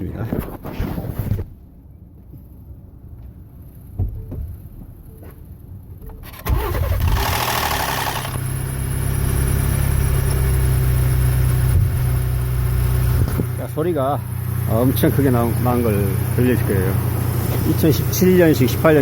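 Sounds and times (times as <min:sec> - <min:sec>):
engine cranking and starting: 0:06.2 - 0:08.5
engine idling: 0:06.2 - 0:19.0
loud engine rattle: 0:06.3 - 0:19.0.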